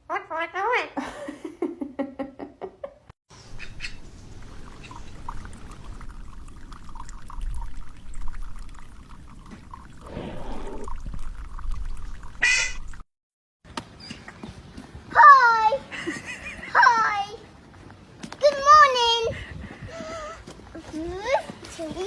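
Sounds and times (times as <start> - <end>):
water pouring and trickling: 3.3 - 13.2
small plips and clicks: 3.5 - 13.0.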